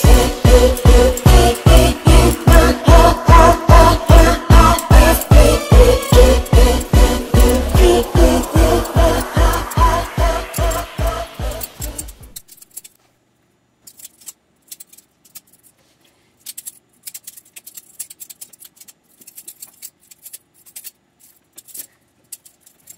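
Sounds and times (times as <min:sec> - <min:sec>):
song: 0:00.0 - 0:12.2.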